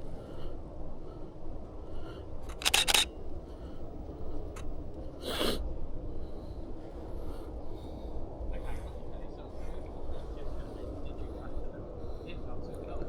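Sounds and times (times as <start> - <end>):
camera shutter clicks: 2.5 - 3.1.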